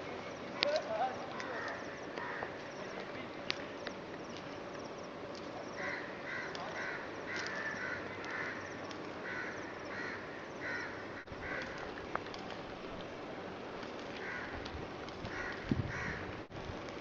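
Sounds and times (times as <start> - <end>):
bird making harsh calls: 5.8 - 8.6, 9.2 - 11.8.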